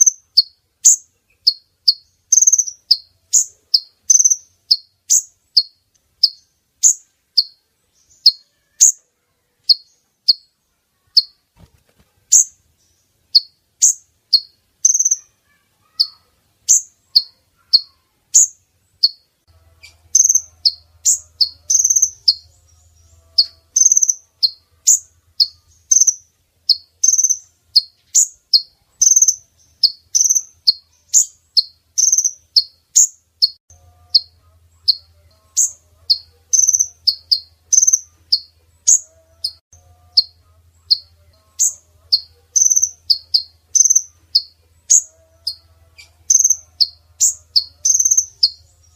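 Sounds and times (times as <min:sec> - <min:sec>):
sunbird high chirps: 0:00.0 - 0:11.5, 0:12.3 - 0:48.9.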